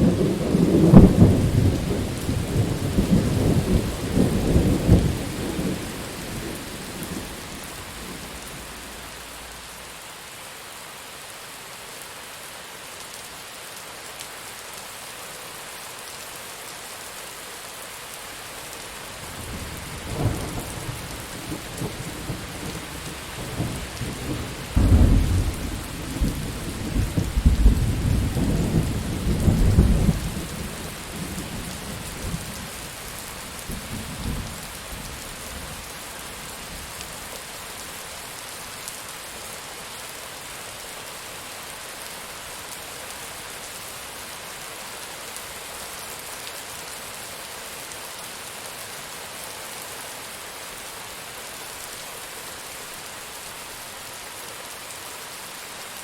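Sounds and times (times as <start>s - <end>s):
thunder rumbling and cracking: 0.0s - 9.7s, 19.4s - 30.6s
steady rain: 0.0s - 56.0s.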